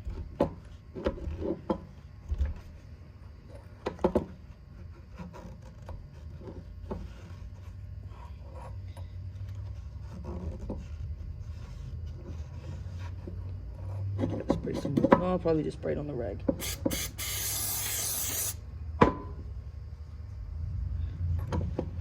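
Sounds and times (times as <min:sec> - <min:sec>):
rag rubbing and scraping: 0:16.6 - 0:18.6.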